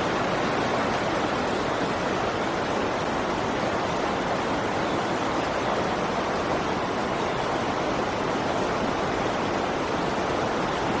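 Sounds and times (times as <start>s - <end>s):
steady rushing noise: 0.0s - 11.0s.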